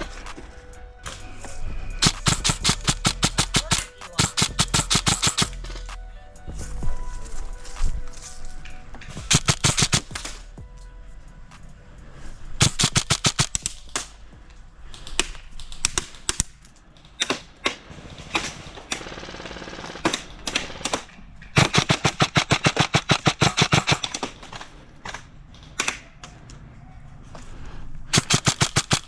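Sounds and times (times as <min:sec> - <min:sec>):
airsoft electric rifle firing: 0:02.0 - 0:05.9, 0:09.3 - 0:10.4, 0:12.6 - 0:14.3, 0:17.2 - 0:25.2, 0:28.2 - 0:29.0.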